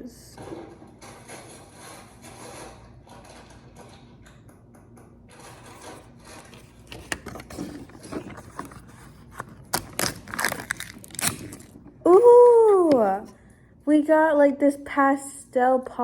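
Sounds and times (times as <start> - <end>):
plastic clicks and crinkles: 5.4 - 13.1
hands rubbing packaging: 5.6 - 11.8.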